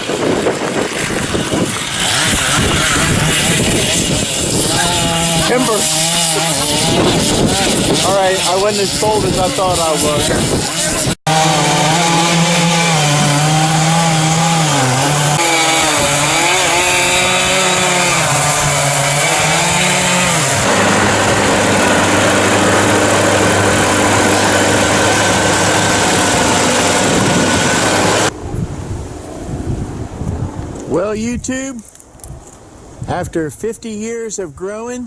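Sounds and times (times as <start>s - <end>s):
chainsaw cutting wood: 0.0s - 28.3s.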